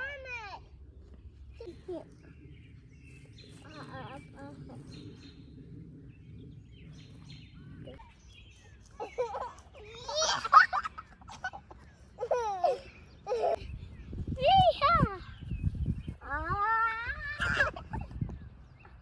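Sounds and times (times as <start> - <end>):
child squealing and babbling: 16.2 - 17.9.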